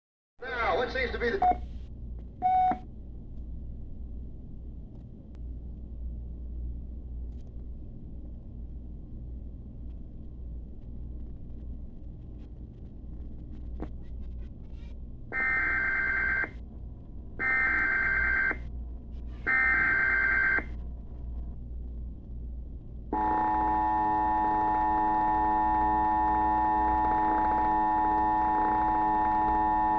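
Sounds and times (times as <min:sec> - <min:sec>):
low hum: 0:01.5 - 0:29.9
digital data tone bursts: 0:23.2 - 0:29.9
two-tone attention signal: 0:23.2 - 0:29.9.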